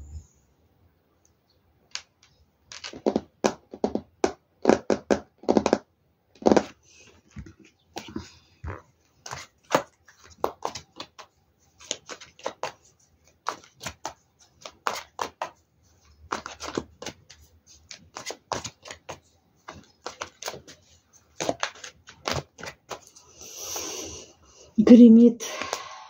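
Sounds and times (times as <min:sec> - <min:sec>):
cards being shuffled: 0:02.7 - 0:05.8, 0:09.1 - 0:23.2.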